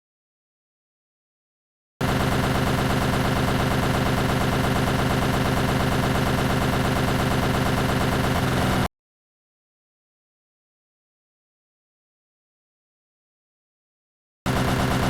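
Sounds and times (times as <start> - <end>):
machine running with even pulsing: 2.0 - 8.9, 14.5 - 15.0.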